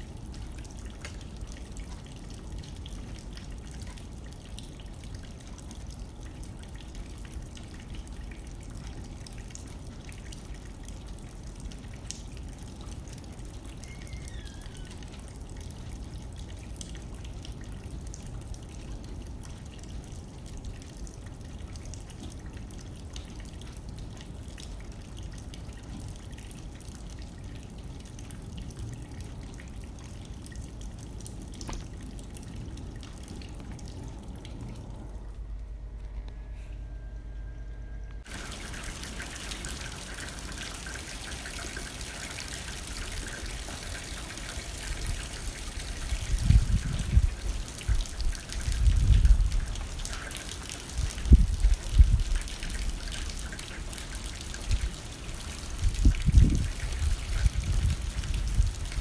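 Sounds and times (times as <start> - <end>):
rain pattering on a window: 0.0 - 35.4, 38.2 - 59.0
low wind rumble: 30.2 - 39.2, 44.6 - 50.2, 50.8 - 53.4, 54.6 - 59.0.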